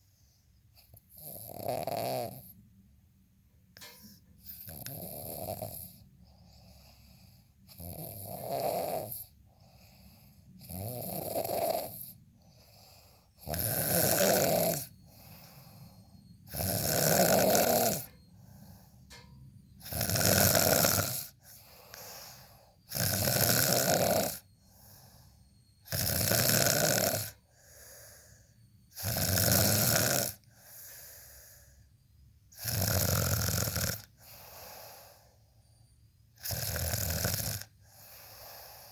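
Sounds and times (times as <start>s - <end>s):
loud snoring: 0.9s - 2.6s, 4.5s - 6.1s, 7.7s - 15.8s, 16.4s - 18.2s, 19.8s - 25.1s, 25.8s - 28.2s, 28.9s - 31.6s, 32.5s - 35.4s, 36.4s - 38.9s
soft breathing: 5.9s - 7.7s, 9.2s - 10.6s, 12.0s - 13.5s, 14.8s - 16.5s, 18.0s - 19.8s, 21.3s - 22.9s, 24.4s - 25.8s, 27.3s - 28.8s, 30.4s - 32.1s, 34.2s - 36.1s, 37.7s - 38.9s.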